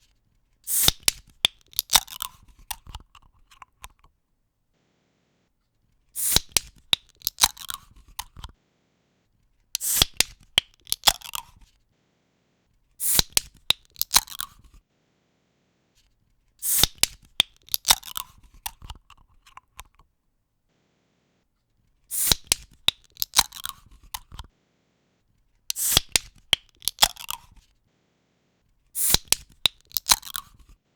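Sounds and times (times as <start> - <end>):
can pull-tab click: 0.7 - 4.1, 6.2 - 8.5, 9.8 - 11.6, 13.0 - 14.6, 16.6 - 20.0, 22.1 - 24.5, 25.7 - 27.6, 29.0 - 30.7
small clicks: 0.7 - 4.1, 6.2 - 8.5, 9.8 - 11.7, 13.0 - 14.8, 16.6 - 20.0, 22.1 - 24.5, 25.7 - 27.7, 29.0 - 30.8
fizzing hiss of carbonation: 6.2 - 6.6, 13.0 - 13.4, 25.7 - 26.3, 29.0 - 29.4.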